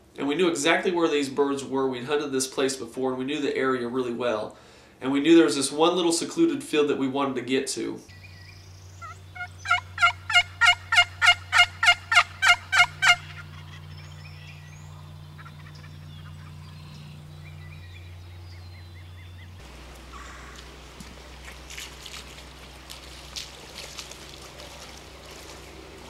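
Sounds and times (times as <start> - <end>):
low electrical hum: 0.0 - 26.0
turkey yelping: 8.9 - 21.7.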